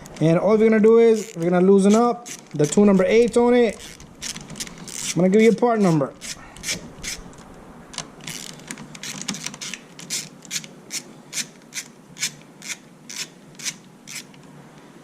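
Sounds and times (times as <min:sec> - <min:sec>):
ratchet wrench clicking: 0:01.1 - 0:05.5, 0:08.3 - 0:14.3.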